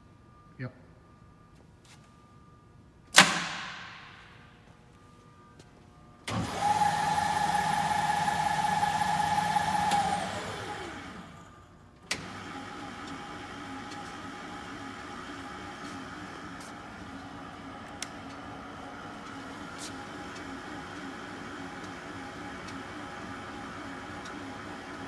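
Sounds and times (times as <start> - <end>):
quiet steady running: 0.2 - 25.0
lathe spindle whine: 6.3 - 11.5.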